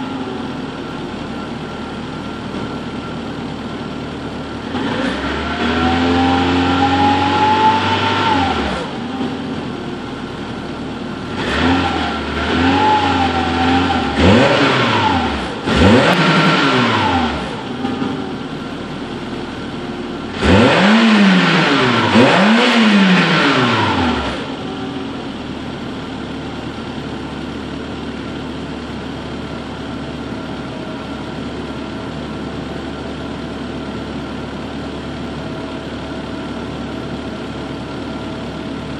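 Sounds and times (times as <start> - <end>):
car engine idling: 0.0 - 4.9, 5.8 - 38.9
car engine revving: 4.5 - 9.7, 10.7 - 26.3.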